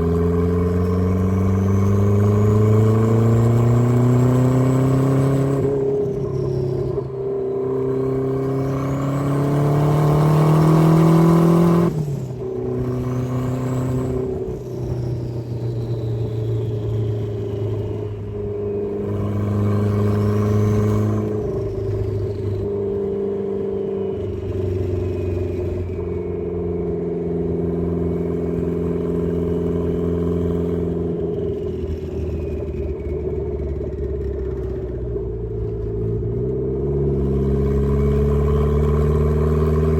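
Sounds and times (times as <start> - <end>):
car engine revving through gears: 0.0 - 39.9.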